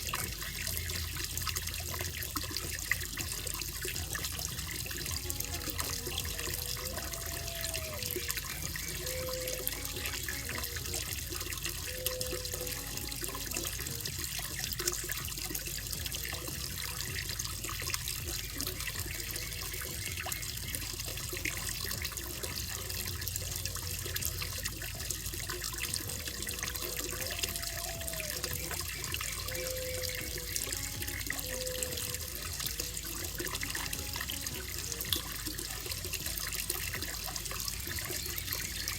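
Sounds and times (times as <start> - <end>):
water splashing into pond: 0.0 - 38.9
faint low whistled notes: 4.8 - 14.0, 25.9 - 33.8.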